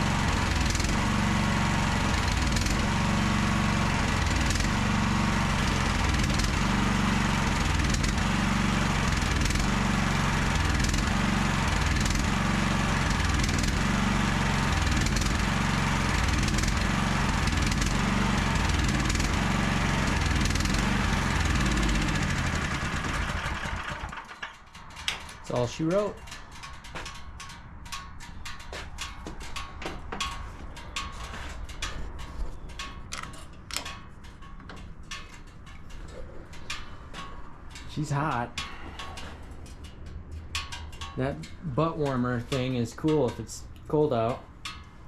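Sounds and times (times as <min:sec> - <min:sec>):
small gasoline engine running: 0:00.0 - 0:24.7.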